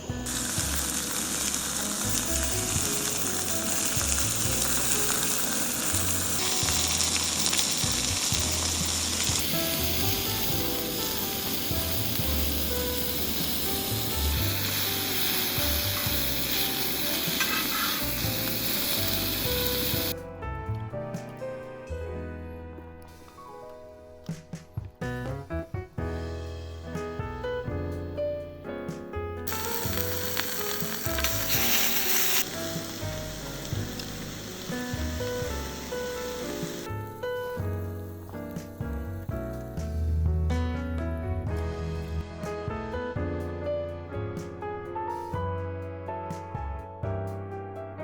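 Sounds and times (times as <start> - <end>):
background music with bass line: 0.0 - 17.4, 23.9 - 47.9
food sizzling in a frying pan: 0.0 - 20.2, 29.5 - 38.9.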